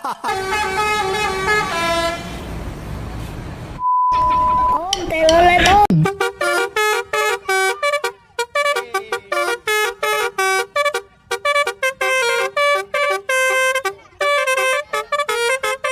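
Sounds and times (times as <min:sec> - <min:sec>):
musical bus horn: 0:00.0 - 0:02.6, 0:05.9 - 0:15.9.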